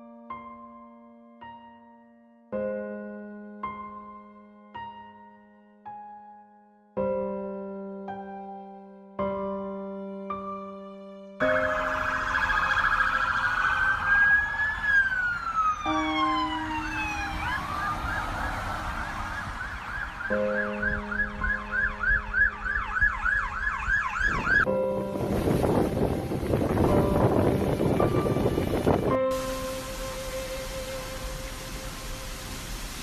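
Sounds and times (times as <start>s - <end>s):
soft piano music: 0.0s - 33.0s
emergency siren wailing and yelping: 11.4s - 24.7s
wind noise: 16.6s - 33.0s.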